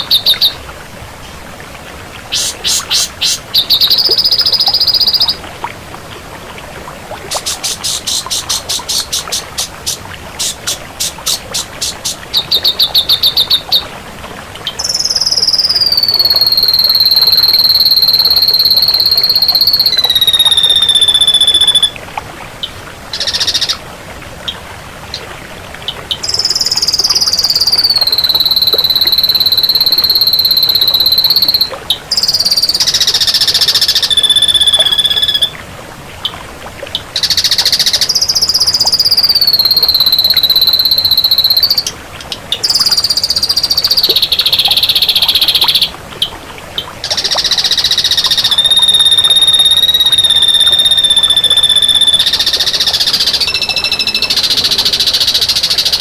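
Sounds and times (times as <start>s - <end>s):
long high whistling calls: 0.0s - 1.4s, 2.2s - 5.5s, 7.1s - 13.9s, 14.7s - 22.0s, 23.1s - 23.8s, 26.2s - 35.6s, 37.2s - 42.0s, 42.6s - 46.0s, 47.0s - 56.0s.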